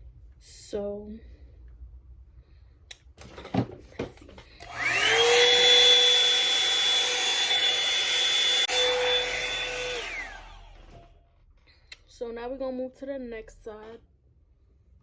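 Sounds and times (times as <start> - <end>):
hair dryer motor whining: 4.6 - 11.2.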